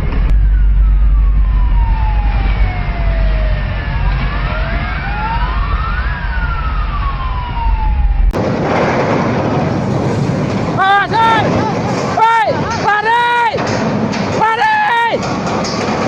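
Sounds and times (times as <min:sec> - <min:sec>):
loud even rushing noise: 0:00.0 - 0:12.7
wailing sirens: 0:00.0 - 0:13.7
heavy low rumble: 0:00.0 - 0:14.5.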